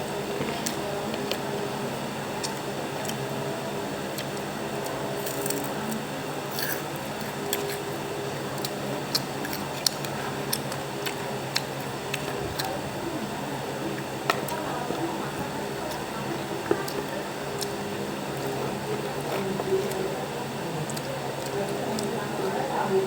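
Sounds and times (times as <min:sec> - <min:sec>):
background hum: 0:00.0 - 0:23.0
person chewing food: 0:05.2 - 0:05.7, 0:06.5 - 0:08.0, 0:08.6 - 0:12.7.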